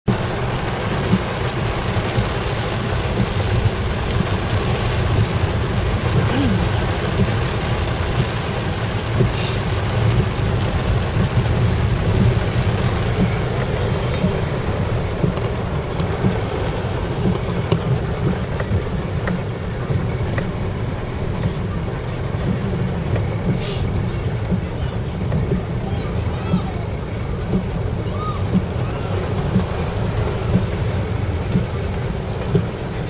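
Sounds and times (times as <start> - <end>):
vehicle rumbling: 0.0 - 33.0.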